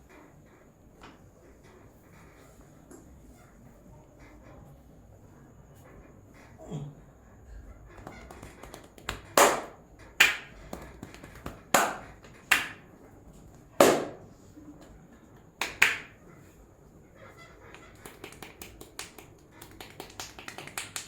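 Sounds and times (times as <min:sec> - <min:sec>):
hands slapping head: 0:08.0 - 0:12.8, 0:13.8 - 0:14.2, 0:15.6 - 0:16.1, 0:17.7 - 0:21.0.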